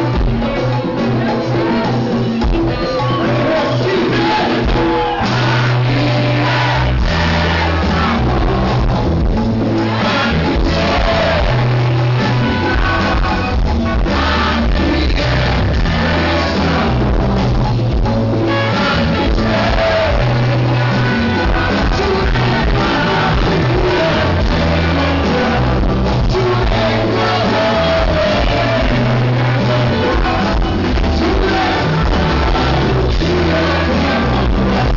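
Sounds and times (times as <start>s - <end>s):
heavy bass line: 0.0s - 34.9s
live rock band playing: 0.0s - 34.9s
person singing: 18.4s - 34.9s.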